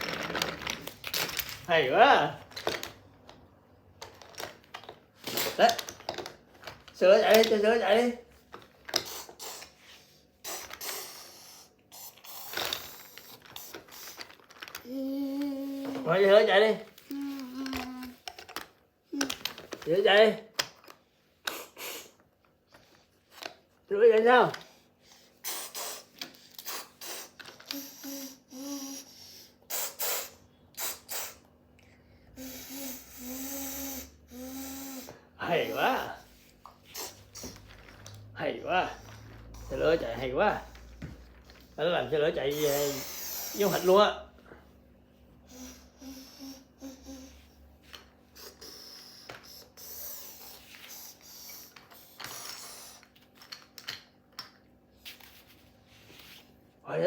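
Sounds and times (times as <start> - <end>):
child making chugging puffs: 9.0 - 9.7, 10.4 - 13.0, 21.5 - 22.2, 25.4 - 31.4, 32.4 - 35.1, 42.6 - 43.9, 45.5 - 47.4, 48.4 - 51.7
child imitating a train: 14.8 - 16.1, 17.1 - 18.2, 26.7 - 31.4, 32.4 - 35.2, 45.5 - 47.4.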